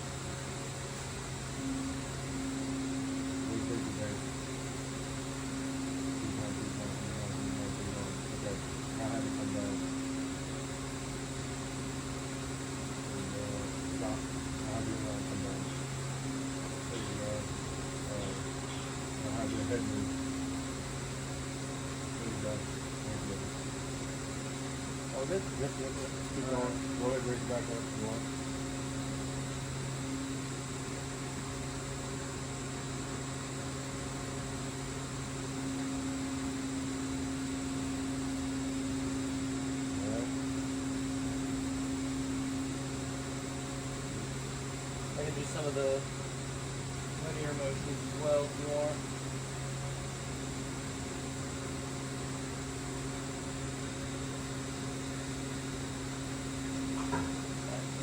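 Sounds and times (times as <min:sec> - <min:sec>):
electric hum: 0:00.0 - 0:58.0
servo whine: 0:00.0 - 0:58.0
low steady tone: 0:01.4 - 0:21.4.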